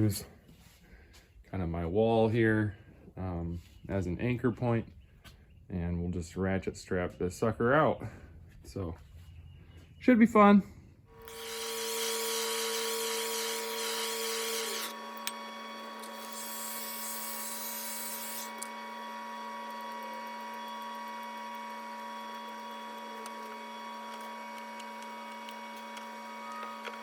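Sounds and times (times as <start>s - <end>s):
electrical hum and whir: 10.6s - 27.0s.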